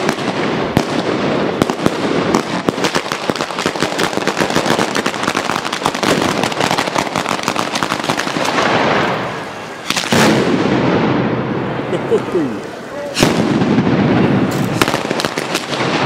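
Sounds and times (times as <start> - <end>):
firecrackers cracking: 0.0 - 16.0
heavy firecracker bang: 6.0 - 11.6, 13.1 - 16.0.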